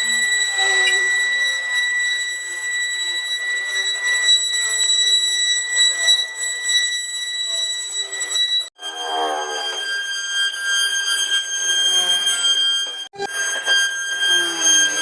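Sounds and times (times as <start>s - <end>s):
router cutting wood: 9.3s - 15.0s
router spindle whining: 9.4s - 15.0s.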